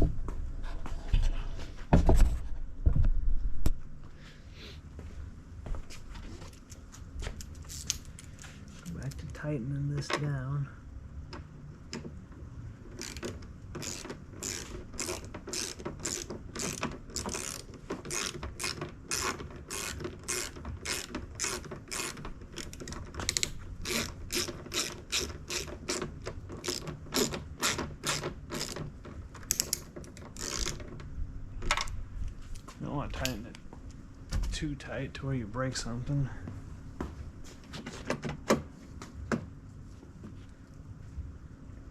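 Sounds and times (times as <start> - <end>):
hand ratchet clicking: 13.0 - 28.8, 29.5 - 30.9.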